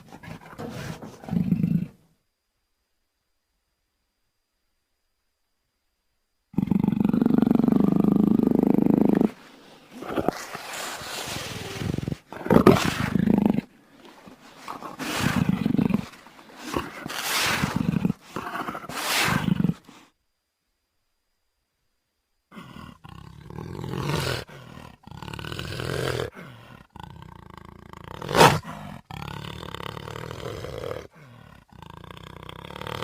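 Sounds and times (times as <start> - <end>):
big cat growling: 0.0 - 2.0, 6.6 - 20.0, 22.5 - 33.0
big cat roaring: 6.6 - 13.8, 14.5 - 19.9, 22.5 - 33.0.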